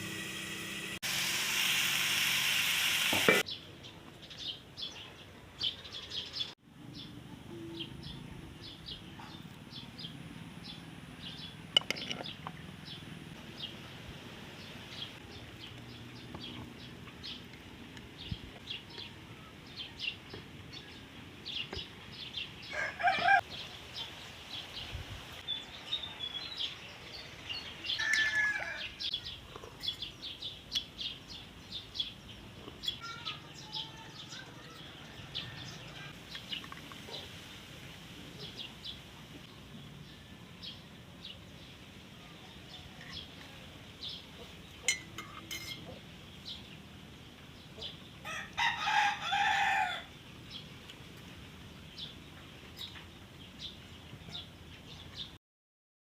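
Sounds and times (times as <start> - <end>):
chickens calling: 22.6 - 23.5.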